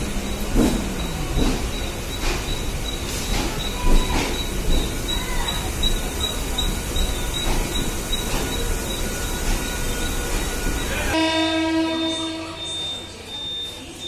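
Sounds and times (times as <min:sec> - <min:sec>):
train rumbling and rattling: 0:00.0 - 0:13.9
train horn tone: 0:11.1 - 0:12.7.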